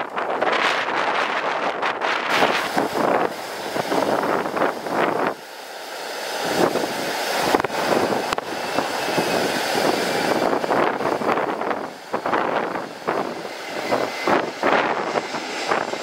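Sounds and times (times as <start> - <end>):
jet engines whining: 0.0 - 16.0
wind buffeting microphone: 0.0 - 16.0.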